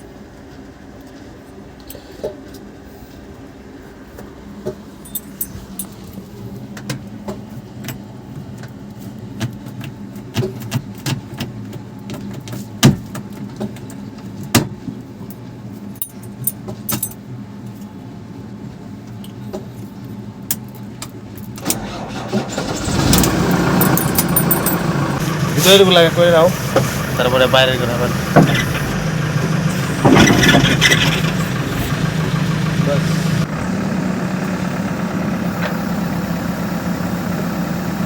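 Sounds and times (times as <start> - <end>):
sharp clinks and knocks: 5.0 - 6.2, 16.0 - 17.2, 23.8 - 24.9
diesel engine running and revving: 21.6 - 38.0.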